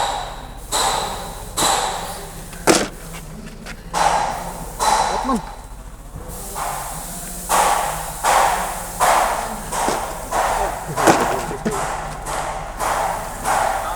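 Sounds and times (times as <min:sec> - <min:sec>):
heavy knocks and bangs: 0:01.6 - 0:05.6, 0:07.6 - 0:13.8.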